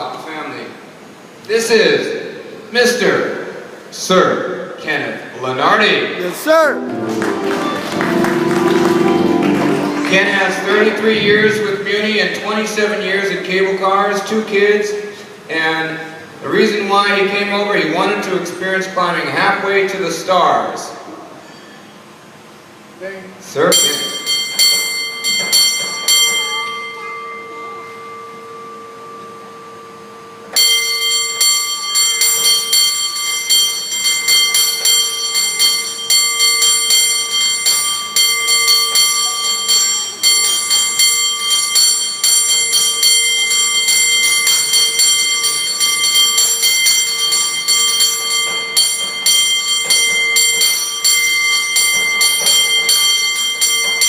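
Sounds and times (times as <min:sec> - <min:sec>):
cable car bell ringing: 0:06.5 - 0:13.0, 0:23.7 - 0:54.0.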